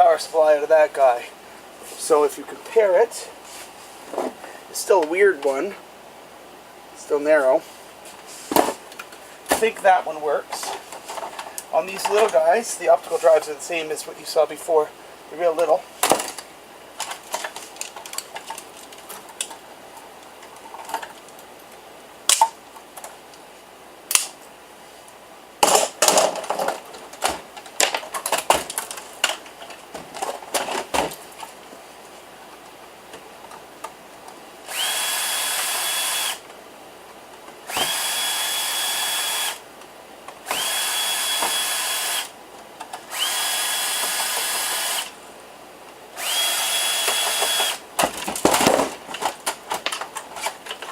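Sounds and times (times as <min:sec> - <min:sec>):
electric drill-driver whining: 0:34.7 - 0:36.4, 0:37.7 - 0:39.6, 0:40.4 - 0:42.3, 0:43.1 - 0:45.1, 0:46.2 - 0:47.8.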